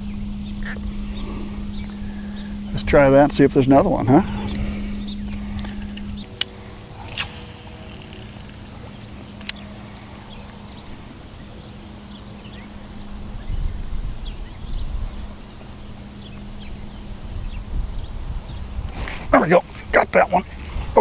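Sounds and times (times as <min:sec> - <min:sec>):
faint steady hum: 0:00.0 - 0:21.0
low rumbling wind gusts: 0:00.0 - 0:21.0
small birds chirping: 0:00.0 - 0:21.0
sharp clicks: 0:05.3 - 0:10.6.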